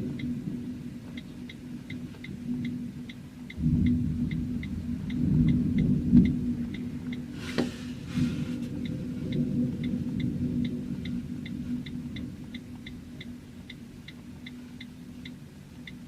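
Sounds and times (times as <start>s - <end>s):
wind buffeting microphone: 0.0s - 14.5s
steady hum: 0.0s - 16.0s
fast even ticking: 1.2s - 7.3s.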